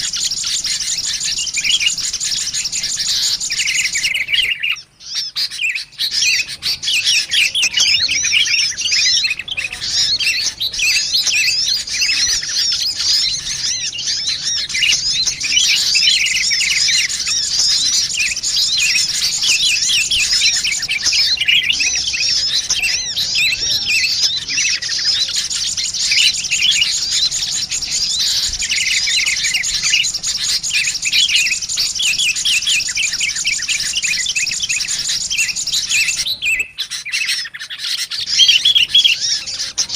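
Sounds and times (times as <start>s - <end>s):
birds chirping rapidly: 0.0s - 39.9s.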